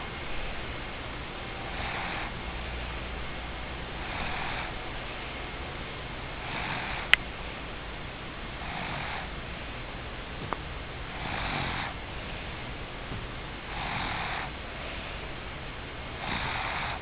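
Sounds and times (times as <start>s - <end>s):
low steady hum: 0.0s - 17.0s
snoring: 1.7s - 2.3s, 4.0s - 4.8s, 6.4s - 7.2s, 8.6s - 9.4s, 11.1s - 12.0s, 13.7s - 14.5s, 16.2s - 17.0s.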